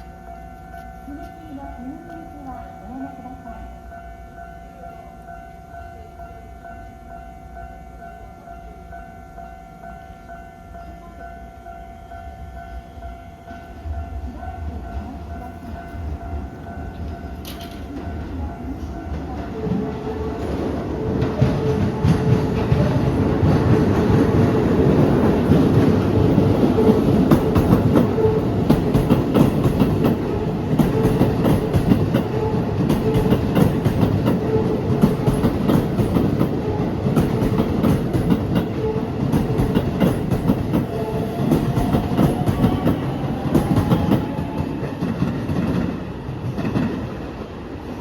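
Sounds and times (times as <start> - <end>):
crossing alarm ringing: 0.0 - 45.9
train wheels clattering over rail joints: 16.9 - 44.3.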